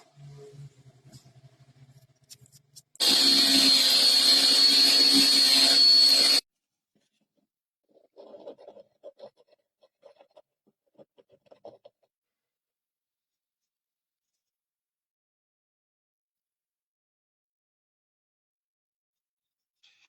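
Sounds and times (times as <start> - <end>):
electric drill running: 3.0 - 6.4.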